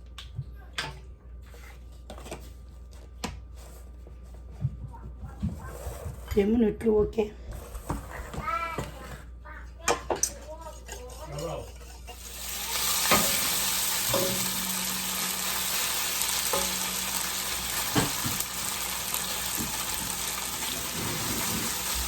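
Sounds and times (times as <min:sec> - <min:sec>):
meat sizzling in a pan: 0:12.1 - 0:22.0.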